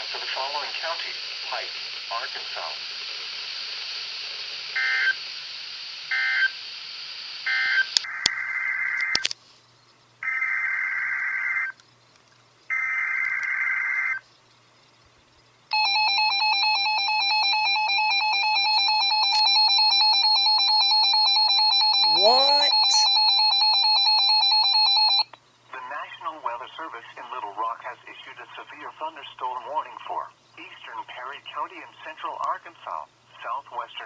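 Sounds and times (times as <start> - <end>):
radio static: 22.2 - 23.1.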